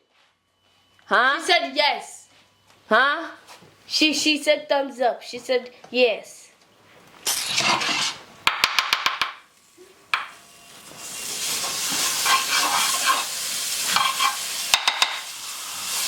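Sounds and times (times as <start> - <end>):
butter sizzling in a frying pan: 9.5 - 16.0.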